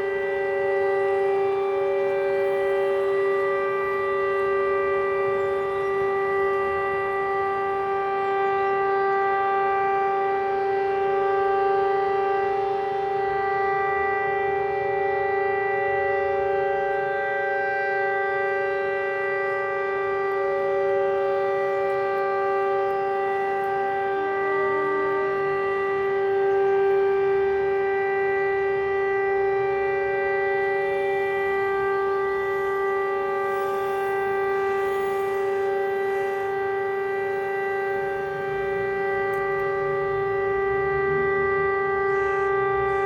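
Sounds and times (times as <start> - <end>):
steady warning siren tone: 0.0 - 43.0.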